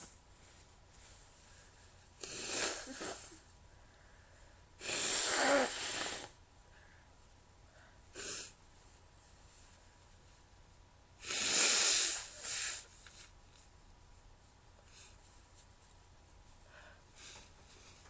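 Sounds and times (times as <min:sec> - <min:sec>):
breath hissing through nose: 0:02.2 - 0:03.4, 0:04.8 - 0:06.4, 0:08.2 - 0:08.6, 0:11.2 - 0:12.9.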